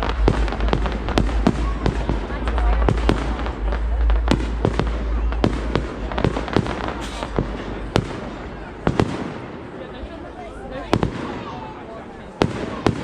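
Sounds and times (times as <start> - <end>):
deep rumble: 0.0 - 9.8
fireworks bangs and cracks: 0.0 - 13.0.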